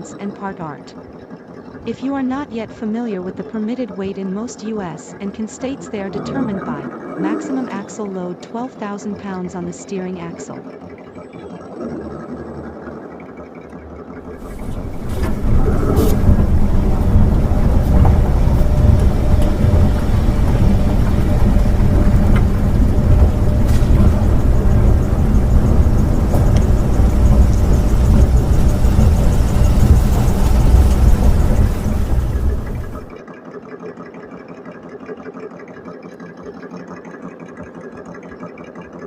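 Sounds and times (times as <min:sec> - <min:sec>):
truck engine rumbling: 0:14.2 - 0:33.2.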